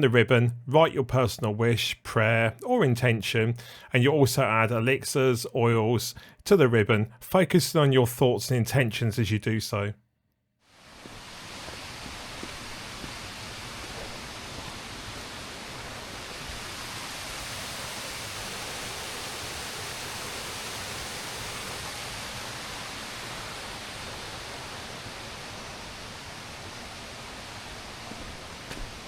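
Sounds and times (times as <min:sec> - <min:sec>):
rushing water: 0:10.7 - 0:29.0.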